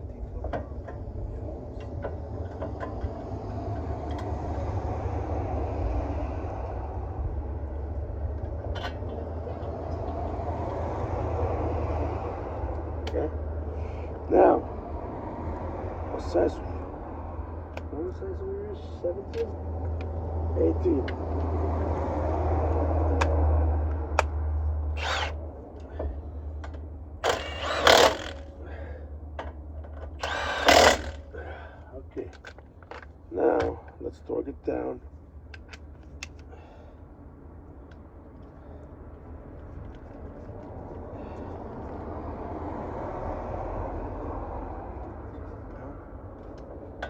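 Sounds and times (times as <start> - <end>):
passing vehicle rushing: 3.0 - 8.7, 9.3 - 18.8, 19.5 - 26.3, 40.6 - 46.2.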